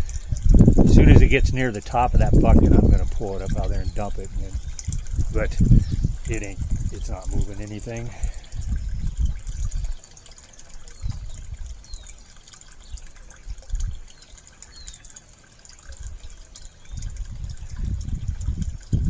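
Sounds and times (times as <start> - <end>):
low rumbles: 0.0 - 10.0
water pouring into bucket: 0.0 - 19.0.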